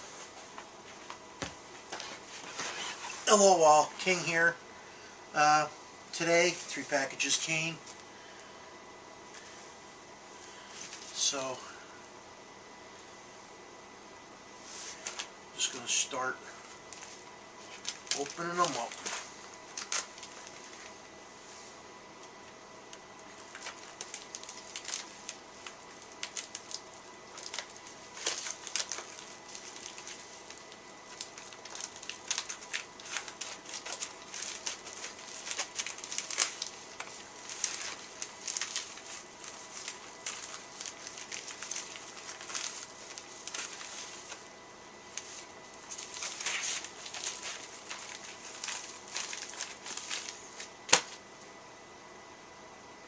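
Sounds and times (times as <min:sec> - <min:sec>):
packing material rustling and tearing: 0:01.8 - 0:04.3, 0:14.8 - 0:16.0, 0:16.6 - 0:21.0, 0:23.2 - 0:51.2.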